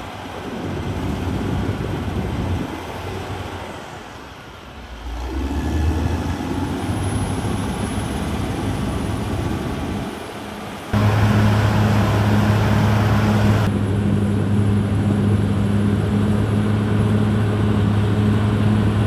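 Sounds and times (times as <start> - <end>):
bulldozer diesel engine: 4.7 - 10.1, 10.9 - 19.0.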